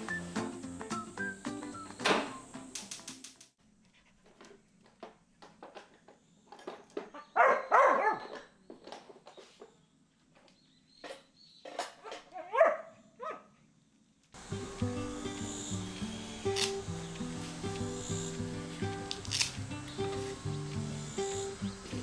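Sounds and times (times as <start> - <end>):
small clicks: 2.1 - 3.5, 14.4 - 22.0.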